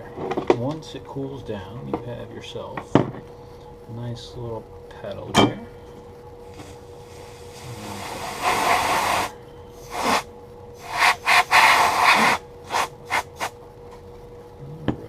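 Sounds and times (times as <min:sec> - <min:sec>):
compressed air can spraying: 0:06.6 - 0:13.5.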